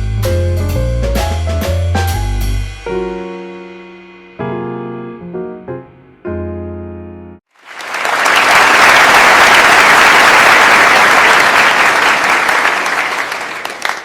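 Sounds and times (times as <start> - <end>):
audience applause: 7.5 - 14.0.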